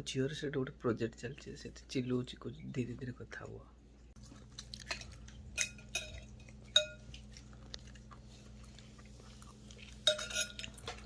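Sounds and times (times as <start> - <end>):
cutlery clinking on dishes: 4.8 - 7.2, 9.9 - 11.0.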